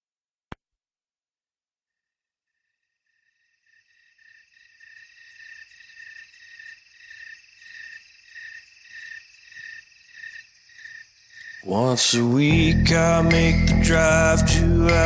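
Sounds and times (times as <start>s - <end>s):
song with instruments and voice: 11.6s - 15.0s.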